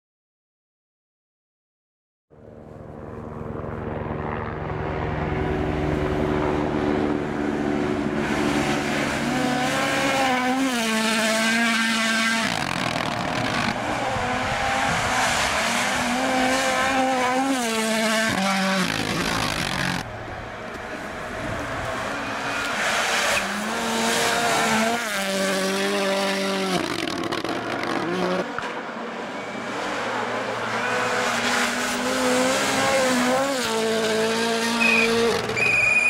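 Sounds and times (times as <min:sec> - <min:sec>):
rally car engine revving: 0:06.7 - 0:20.1, 0:20.7 - 0:28.8, 0:29.4 - 0:36.0.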